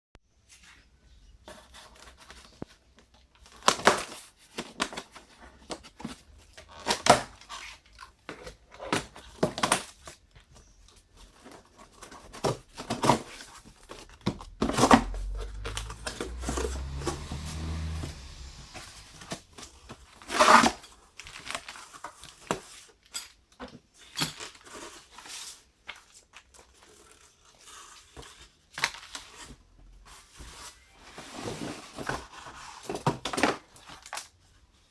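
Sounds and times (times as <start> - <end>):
low rumble: 13.7 - 20.1.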